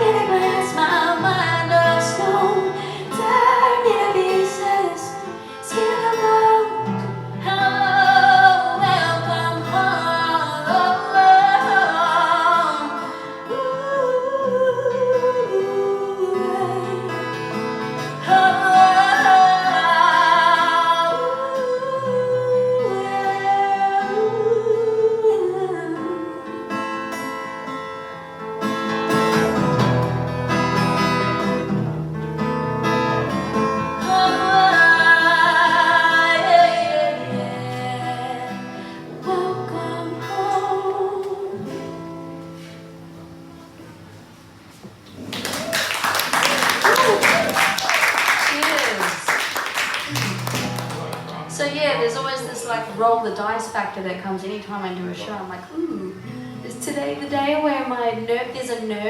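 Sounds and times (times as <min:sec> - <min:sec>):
person singing: 0:00.0 - 0:26.7, 0:33.9 - 0:41.8
guitar accompaniment: 0:00.0 - 0:59.0.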